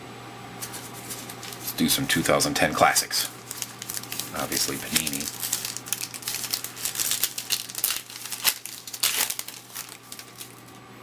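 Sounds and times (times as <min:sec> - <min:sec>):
wrapper tearing and crinkling: 0:00.6 - 0:01.8, 0:03.3 - 0:10.8.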